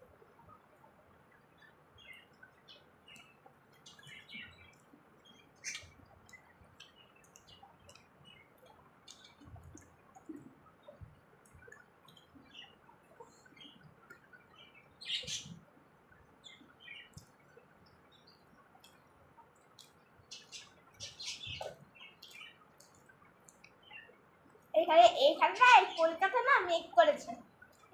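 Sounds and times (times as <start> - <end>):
small birds chirping: 0.0 - 27.9.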